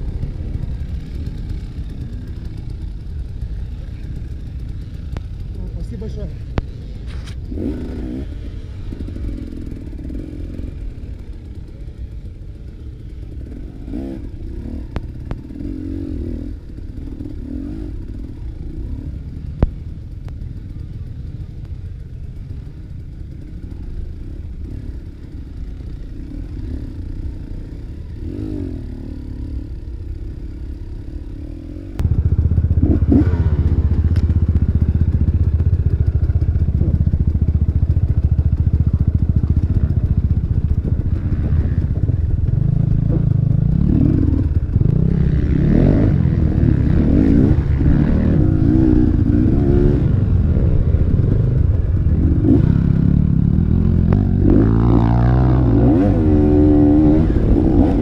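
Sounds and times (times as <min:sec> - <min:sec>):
motorcycle engines running: 0:00.0 - 0:58.0.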